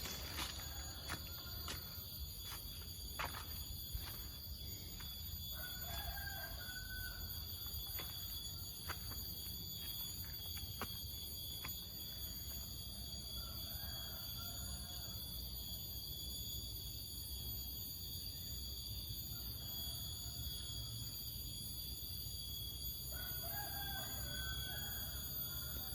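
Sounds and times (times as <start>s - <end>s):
rooster crowing: 0.0s - 2.6s, 3.2s - 9.2s, 12.9s - 15.6s, 19.3s - 21.0s, 23.1s - 25.9s
high-pitched hum: 0.0s - 13.7s.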